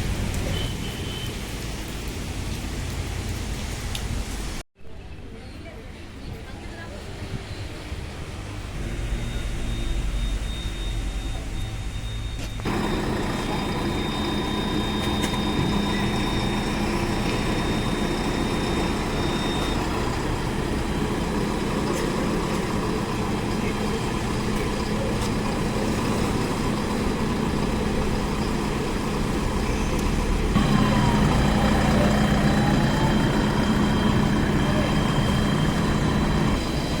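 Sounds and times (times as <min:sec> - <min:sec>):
diesel engine running: 0:08.4 - 0:37.0.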